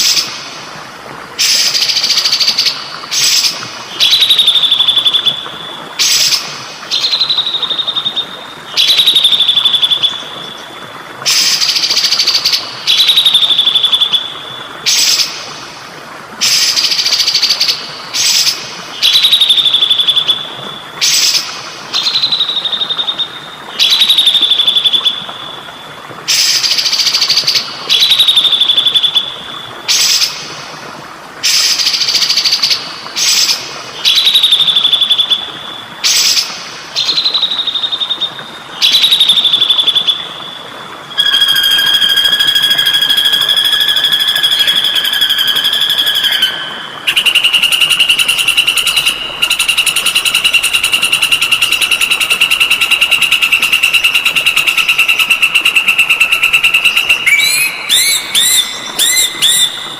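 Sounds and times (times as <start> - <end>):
water trickling: 0.0 - 59.9
songbird singing: 41.1 - 59.9.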